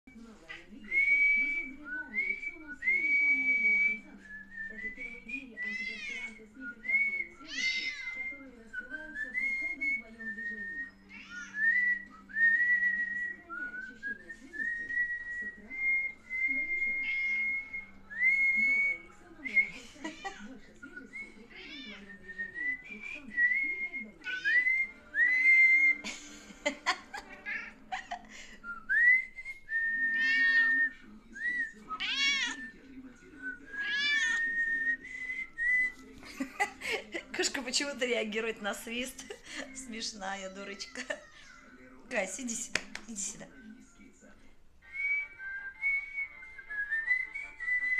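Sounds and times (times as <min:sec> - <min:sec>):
cat meowing: 0:07.5 - 0:08.2, 0:17.0 - 0:17.6, 0:21.5 - 0:22.0, 0:30.2 - 0:30.8, 0:32.0 - 0:32.6, 0:33.8 - 0:34.4
person whistling: 0:28.7 - 0:30.2
person whistling a tune: 0:28.7 - 0:30.2, 0:34.6 - 0:36.0, 0:44.9 - 0:47.9.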